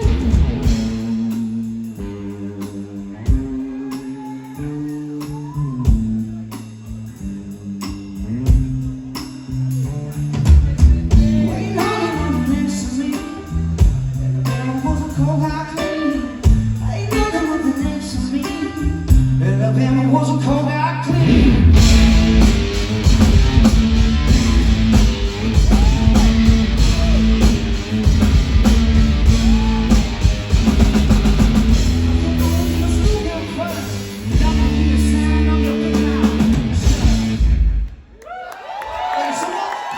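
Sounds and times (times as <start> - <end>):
electric guitar riff: 0.0 - 1.4, 21.1 - 37.9
drums: 0.0 - 39.9
crashing drums: 21.2 - 35.0.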